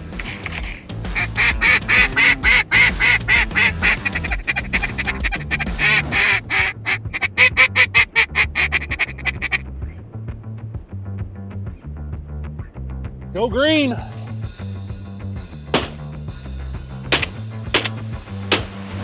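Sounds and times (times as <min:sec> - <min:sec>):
duck quacking: 0:01.1 - 0:09.6.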